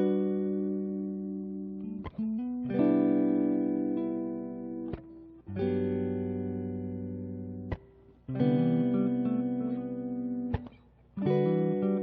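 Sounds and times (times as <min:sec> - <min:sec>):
plucked guitar music: 0:00.0 - 0:12.0.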